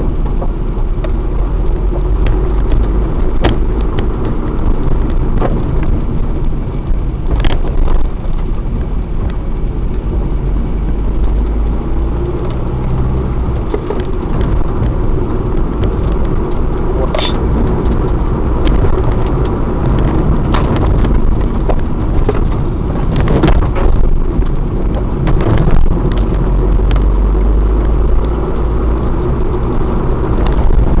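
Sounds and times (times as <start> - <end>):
vehicle engine and road noise: 0.0 - 31.0
sharp knocks and clicks: 2.1 - 6.0, 13.6 - 28.7.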